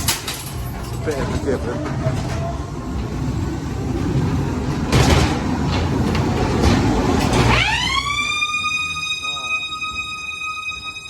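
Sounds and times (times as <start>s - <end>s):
ride car rumbling on track: 0.0s - 8.1s.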